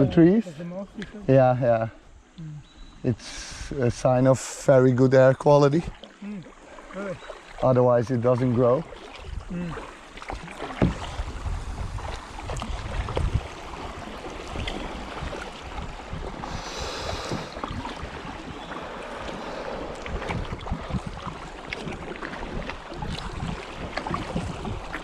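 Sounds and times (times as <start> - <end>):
paddles splashing in water: 3.2 - 25.0
wind on microphone: 10.8 - 25.0.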